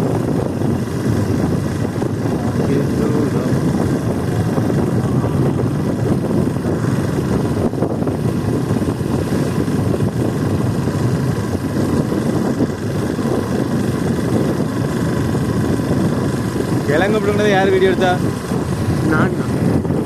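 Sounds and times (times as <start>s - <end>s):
motorcycle riding: 0.0s - 20.0s
wind rushing over microphone: 0.0s - 20.0s.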